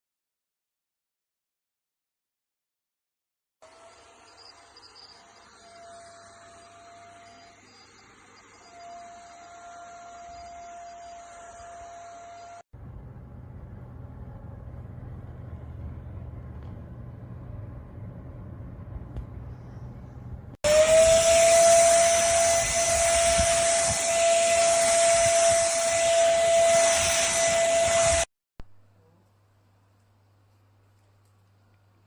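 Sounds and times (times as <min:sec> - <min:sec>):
vacuum cleaner running: 0:03.6 - 0:12.6, 0:20.6 - 0:28.3
low steady rumble: 0:12.8 - 0:20.6.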